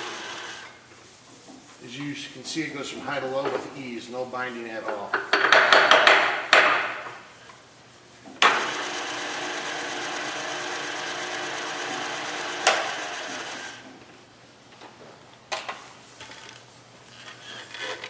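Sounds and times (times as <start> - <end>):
milling machine spindle humming: 0.0 - 0.6, 8.5 - 13.8.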